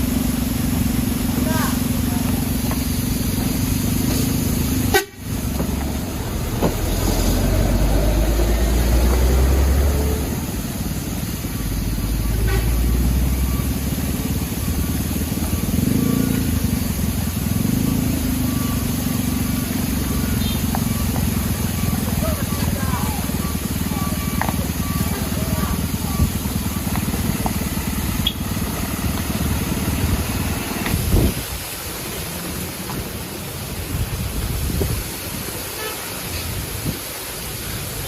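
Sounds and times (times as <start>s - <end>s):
traffic passing: 0.0s - 38.0s
car horns honking: 4.8s - 5.5s, 12.2s - 13.1s, 20.2s - 26.3s, 28.2s - 28.6s, 35.7s - 36.4s.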